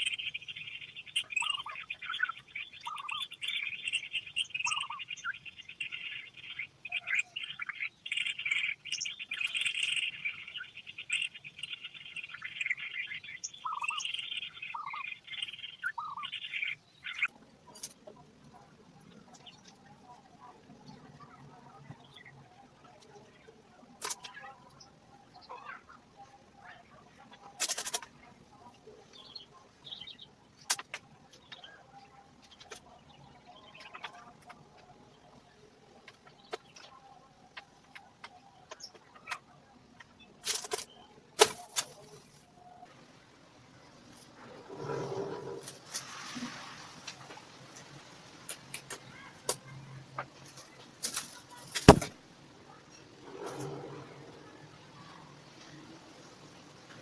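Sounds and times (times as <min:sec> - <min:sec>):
short chirping calls: 0:00.0 - 0:17.9
small birds chirping: 0:00.0 - 0:42.9.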